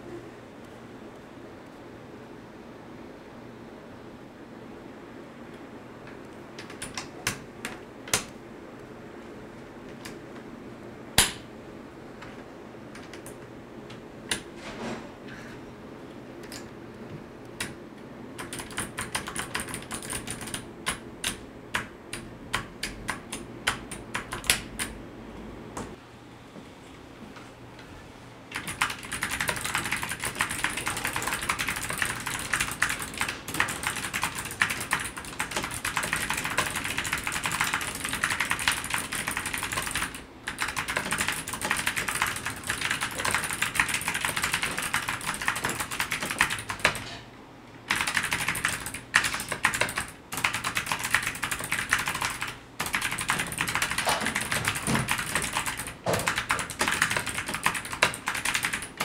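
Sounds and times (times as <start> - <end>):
clicky keyboard typing: 6.3 - 8.4, 18.4 - 25.0, 28.5 - 47.2, 47.9 - 59.0.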